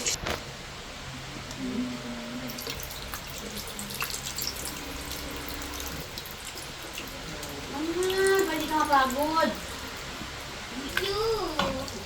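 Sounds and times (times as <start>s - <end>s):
water running: 1.7s - 12.0s.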